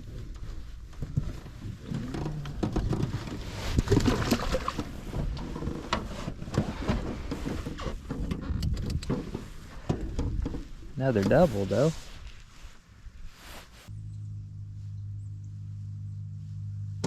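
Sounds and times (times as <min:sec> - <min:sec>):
handling knocks and clicks: 0:00.2 - 0:11.6.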